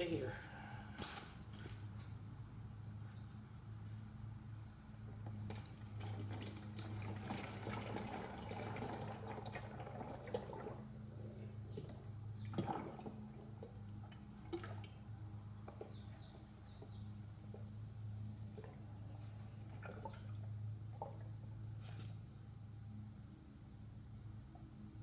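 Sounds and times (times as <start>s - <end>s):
oil pouring into container: 5.5s - 11.1s.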